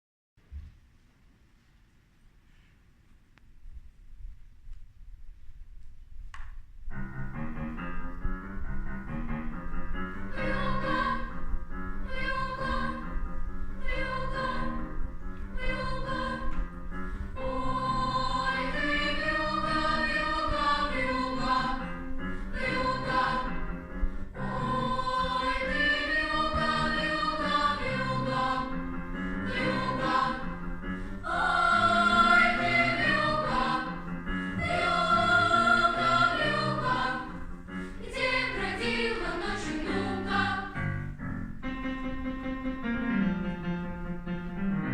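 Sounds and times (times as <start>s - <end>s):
choir singing: 10.3s - 41.0s.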